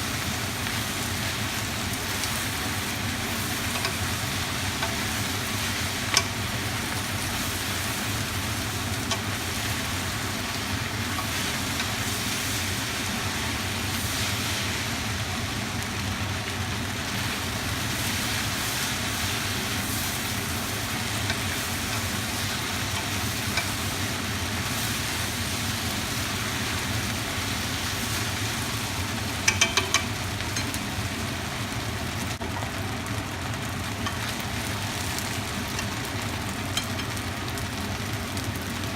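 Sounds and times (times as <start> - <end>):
noodles sizzling in a pan: 0.0 - 38.9
utensil clicking against pan: 3.5 - 4.0, 6.0 - 6.4, 9.0 - 9.4, 29.4 - 30.8.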